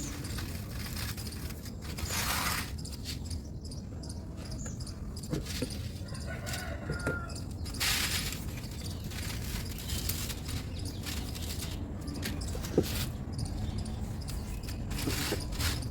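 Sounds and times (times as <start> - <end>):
dry material crumbling: 0.0 - 2.9, 5.3 - 13.2.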